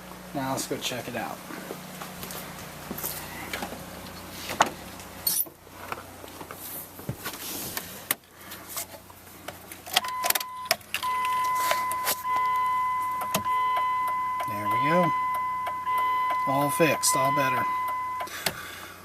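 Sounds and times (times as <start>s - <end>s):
high electronic warning chime: 10.0s - 18.3s.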